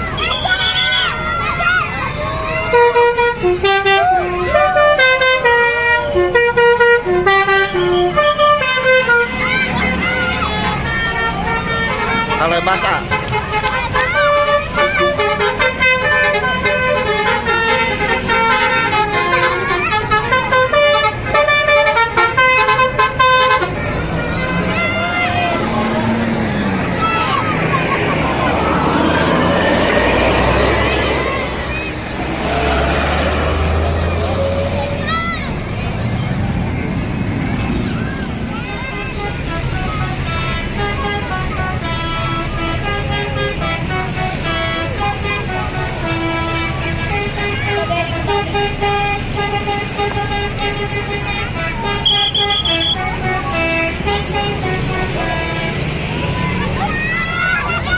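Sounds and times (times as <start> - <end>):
multi-tone air horn tune: 2.6 - 25.3, 38.8 - 55.9.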